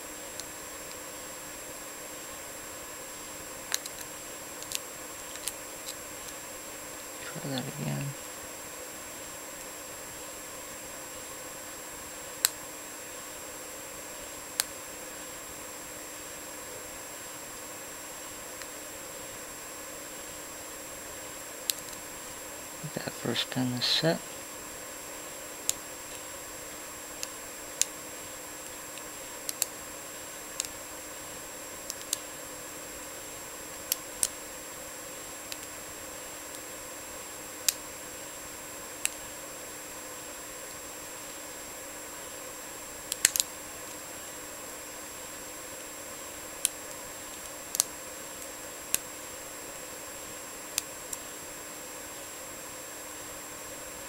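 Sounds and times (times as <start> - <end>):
steady background hiss: 0.0 - 54.0.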